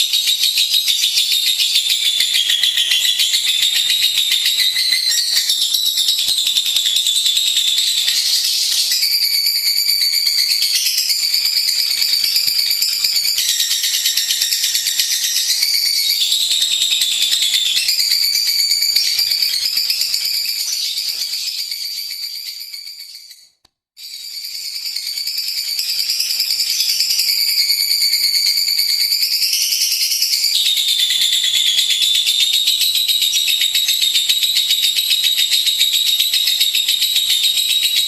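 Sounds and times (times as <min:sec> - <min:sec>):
bird high-pitched trill: 0:00.0 - 0:38.0.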